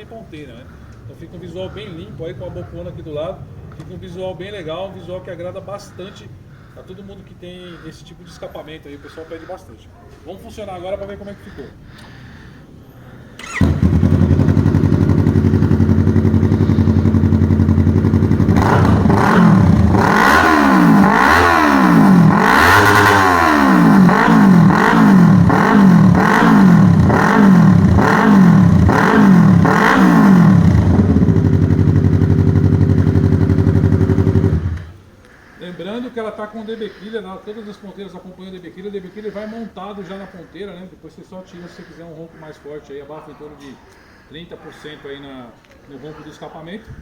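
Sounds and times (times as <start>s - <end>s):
motorcycle engine starting and idling: 13.0s - 35.0s
motorcycle engine revving: 13.4s - 35.0s.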